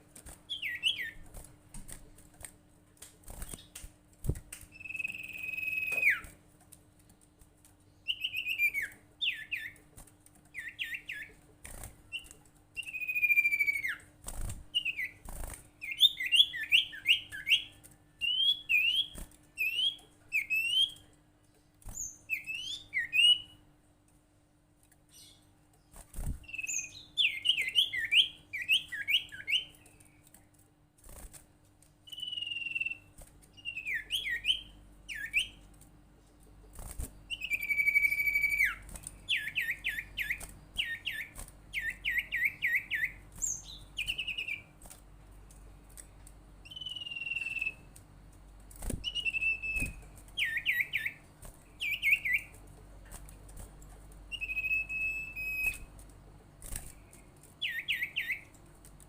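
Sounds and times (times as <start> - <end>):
bird whistling call: 4.8 - 6.3, 32.1 - 33.0, 37.3 - 44.6, 46.7 - 47.8, 49.0 - 51.2, 54.3 - 55.8.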